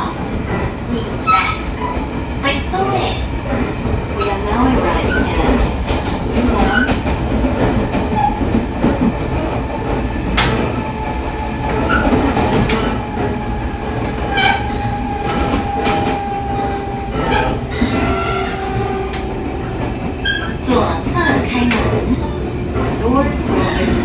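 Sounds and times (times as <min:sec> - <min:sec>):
train running and braking: 0:00.0 - 0:24.0.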